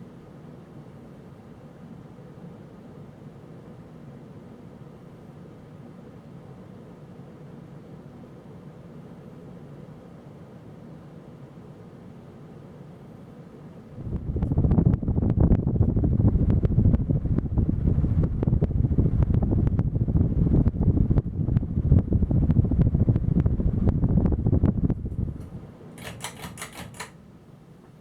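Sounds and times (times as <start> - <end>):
fan wind buffeting microphone: 11.6 - 28.0
sharp clicks: 25.4 - 27.2.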